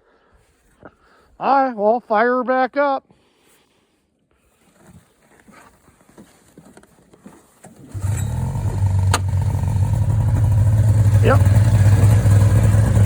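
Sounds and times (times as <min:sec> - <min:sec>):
snowmobile engine starting and idling: 0:07.6 - 0:13.0.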